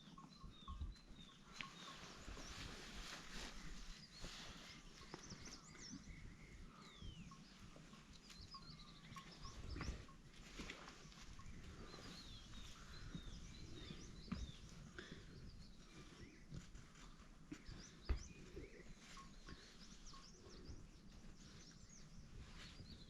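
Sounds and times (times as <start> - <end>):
birds chirping and whistling: 0.0 - 16.6.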